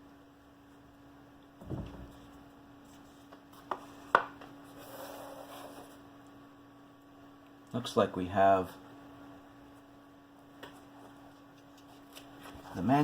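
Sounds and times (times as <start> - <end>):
steady mains hum: 0.0 - 13.0
dull thump: 1.6 - 2.3.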